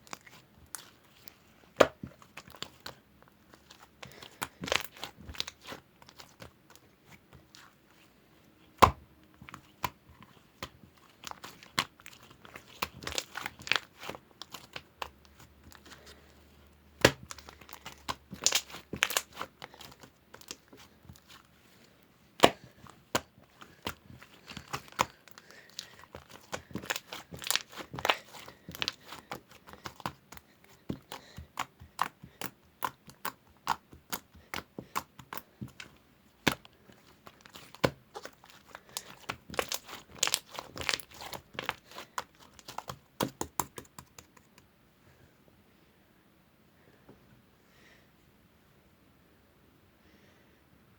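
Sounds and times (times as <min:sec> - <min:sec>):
slime clicking and popping: 0:17.0 - 0:20.6.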